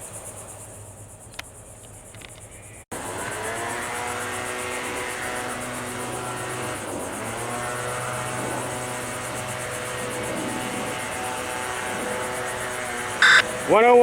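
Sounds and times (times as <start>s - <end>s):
engine humming: 2.9s - 13.9s.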